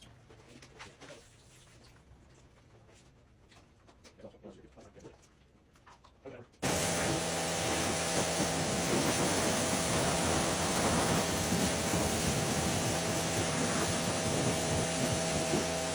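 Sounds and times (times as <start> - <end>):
machine hum: 6.6 - 15.9
machine loud steady hiss: 6.6 - 15.9.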